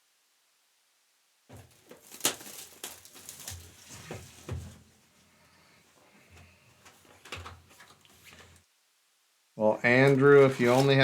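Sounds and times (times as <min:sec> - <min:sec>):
cards clicking and rustling: 0:01.7 - 0:03.8, 0:10.0 - 0:11.0.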